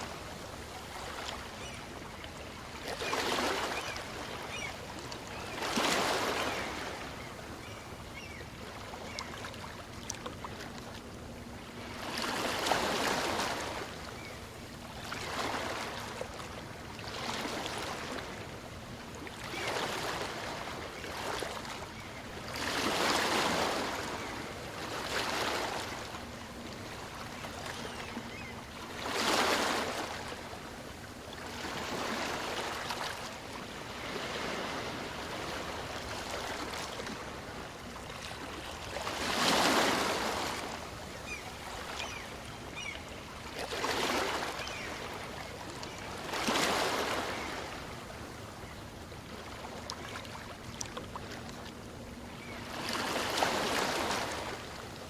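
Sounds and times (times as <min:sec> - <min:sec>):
small waves washing on beach: 0:00.0 - 0:07.2.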